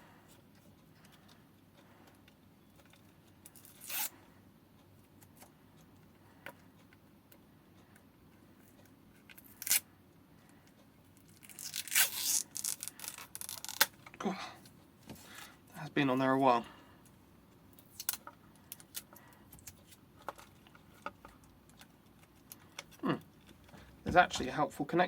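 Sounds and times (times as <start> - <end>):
tape ripping off: 3.5 - 4.1, 9.4 - 9.8, 11.4 - 14.0.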